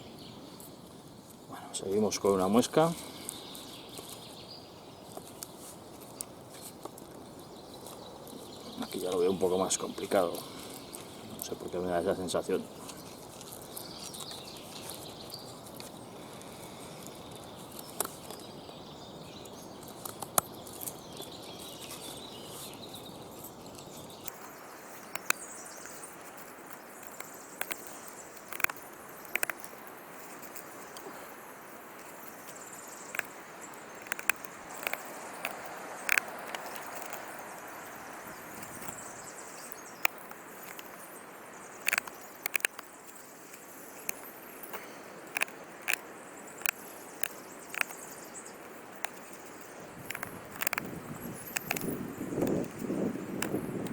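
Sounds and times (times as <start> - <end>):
faint birds: 0.0 - 53.9
knife carving into hard wood: 25.0 - 31.0, 32.0 - 37.4, 38.4 - 41.0, 41.7 - 53.7.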